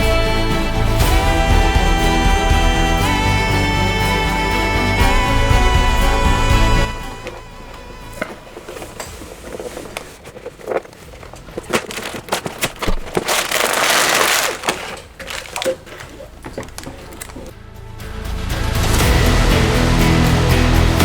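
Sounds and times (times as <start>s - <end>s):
cardboard and bags rustling: 7.0s - 17.6s
plastic bags crinkling: 7.2s - 17.6s.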